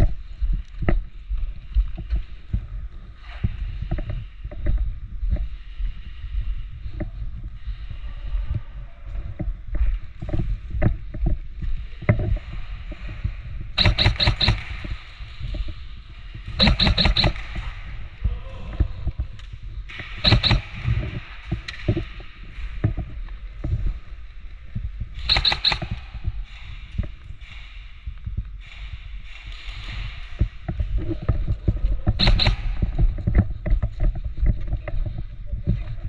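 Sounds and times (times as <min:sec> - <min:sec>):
low rumble of movement: 0:00.0 - 0:36.0
airsoft guns firing bursts: 0:13.8 - 0:15.1, 0:16.6 - 0:17.7, 0:19.9 - 0:21.1, 0:25.2 - 0:26.2, 0:32.2 - 0:32.9.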